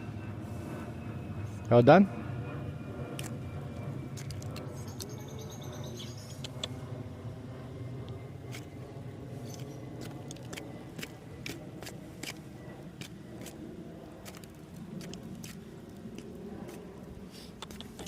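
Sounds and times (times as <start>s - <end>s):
low engine-like hum: 0.0s - 18.0s.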